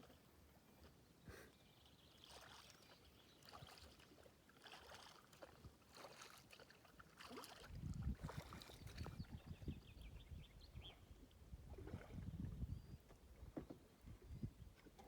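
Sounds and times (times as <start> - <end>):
paddle splashing in water: 3.5 - 9.0.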